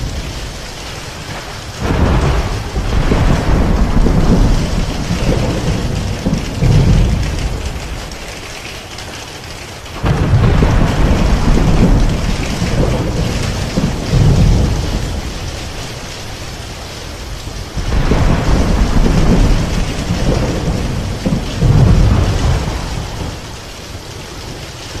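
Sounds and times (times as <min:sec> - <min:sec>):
heavy rain with hail: 0:00.0 - 0:25.0.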